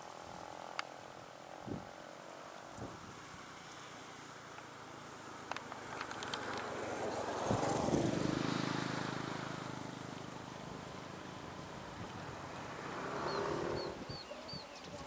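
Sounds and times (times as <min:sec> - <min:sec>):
motor vehicle passing by: 0:03.3 - 0:14.2.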